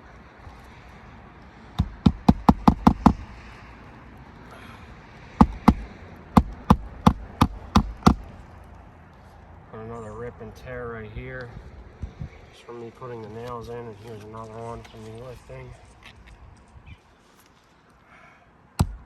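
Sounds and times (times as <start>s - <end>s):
hammer driving nails into shingles: 1.8s - 3.4s, 5.4s - 8.3s, 18.8s - 19.0s.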